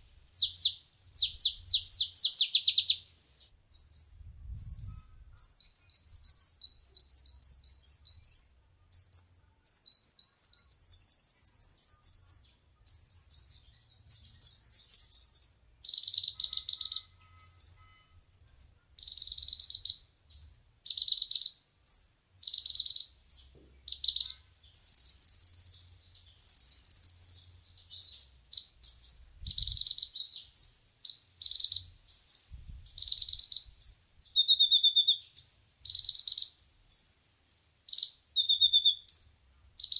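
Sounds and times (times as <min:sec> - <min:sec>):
sunbird singing trills and chirps: 0:00.0 - 0:18.1, 0:18.9 - 0:37.2, 0:37.8 - 0:39.9
buzzy rattling bird notes: 0:09.0 - 0:18.4.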